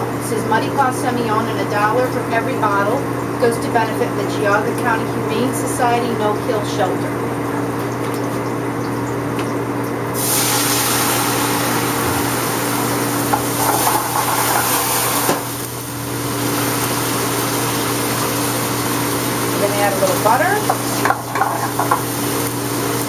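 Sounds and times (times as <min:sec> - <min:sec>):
wine sizzling in a hot pan: 0:10.2 - 0:23.0.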